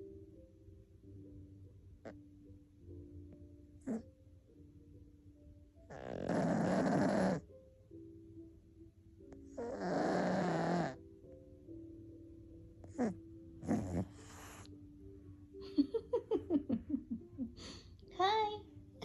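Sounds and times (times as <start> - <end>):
faint background music: 0.0 - 19.0
cat snoring: 3.8 - 4.1, 5.9 - 7.5, 9.5 - 11.0, 12.8 - 14.7.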